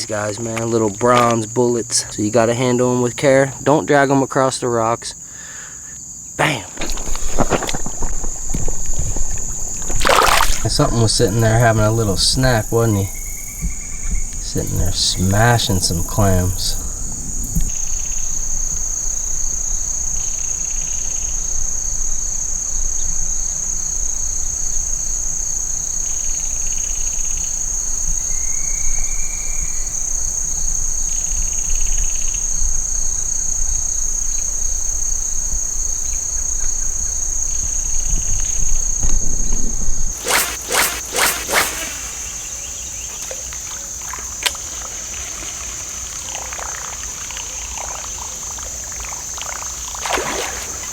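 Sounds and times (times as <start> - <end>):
insects chirping: 0.0 - 50.9
sharp splashing or knocking: 6.4 - 16.8, 40.2 - 50.9.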